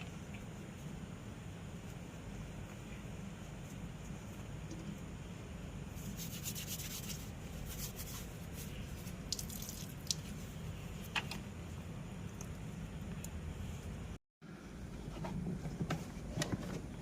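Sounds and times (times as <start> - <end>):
steady low hum: 0.0 - 17.0
rubbing and scraping: 6.0 - 9.3.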